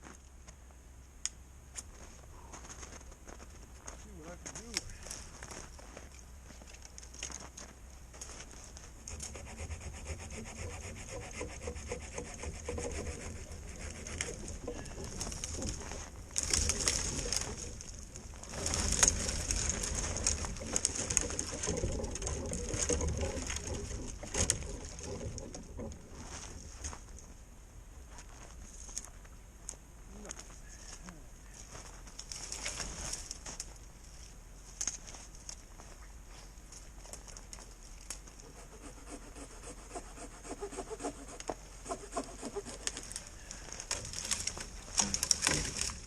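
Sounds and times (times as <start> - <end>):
hand saw cutting wood: 9.0 - 15.8, 18.6 - 25.8, 38.4 - 46.0.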